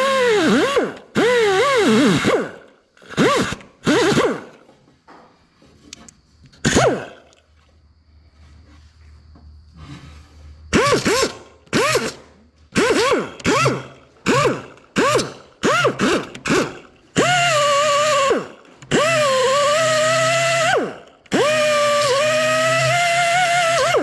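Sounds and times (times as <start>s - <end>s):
grinder spinning up and down: 0.0s - 4.7s, 6.6s - 7.4s, 10.7s - 24.0s.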